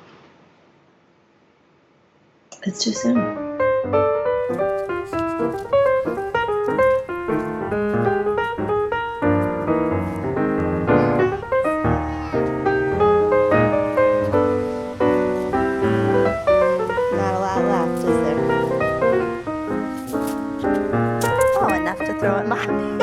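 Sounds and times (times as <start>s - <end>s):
piano music: 2.6s - 23.0s.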